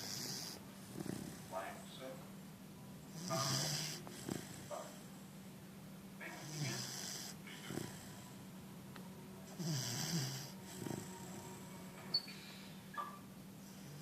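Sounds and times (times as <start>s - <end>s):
puppy snoring: 0.0s - 1.9s, 3.1s - 5.3s, 6.2s - 8.4s, 9.5s - 11.7s, 13.6s - 14.0s.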